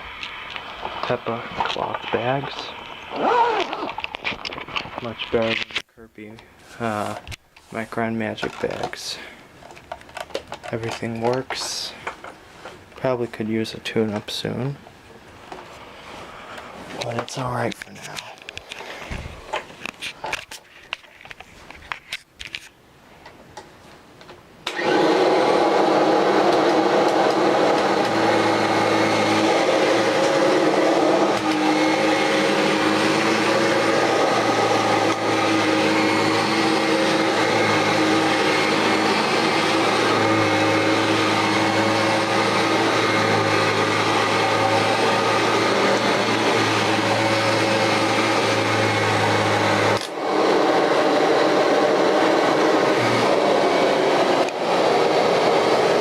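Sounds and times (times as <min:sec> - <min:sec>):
upright vacuum cleaner running: 0:00.0 - 0:04.0, 0:24.6 - 0:56.0.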